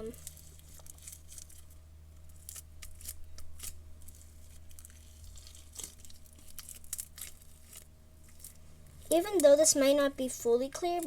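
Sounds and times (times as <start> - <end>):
slime squishing with sticky crackles: 0.0 - 11.0.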